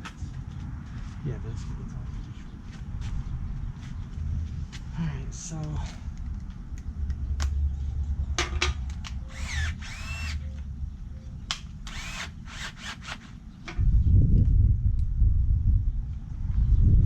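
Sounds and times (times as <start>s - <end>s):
power drill running: 9.3s - 10.4s, 11.9s - 13.4s.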